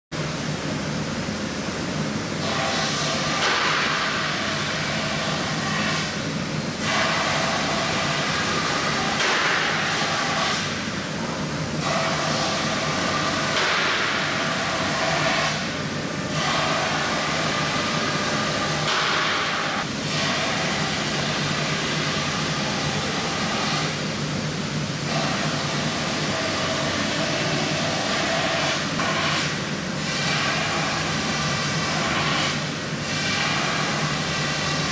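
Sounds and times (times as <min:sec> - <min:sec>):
machine spindle hum: 0:00.2 - 0:34.9
cutter milling foam: 0:06.8 - 0:10.8, 0:11.8 - 0:24.0, 0:25.0 - 0:34.9.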